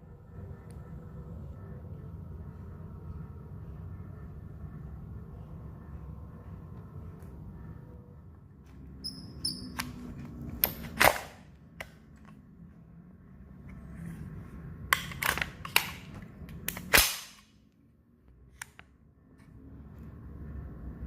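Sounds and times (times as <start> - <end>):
airsoft rifle shots: 16.8 - 17.4.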